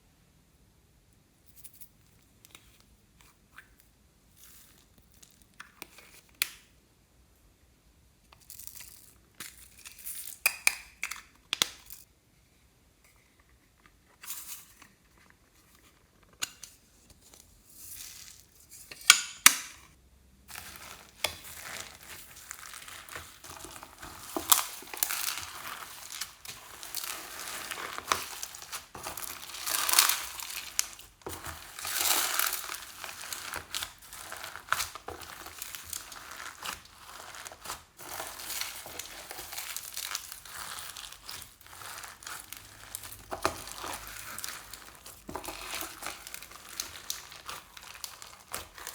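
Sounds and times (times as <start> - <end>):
slime crackling and popping: 20.5 - 48.9.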